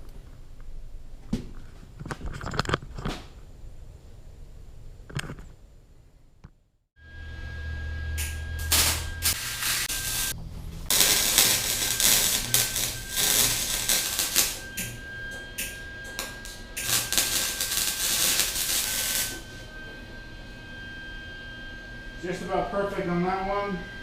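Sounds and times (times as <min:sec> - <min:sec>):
welding arc crackling and hissing: 0:08.1 - 0:19.7.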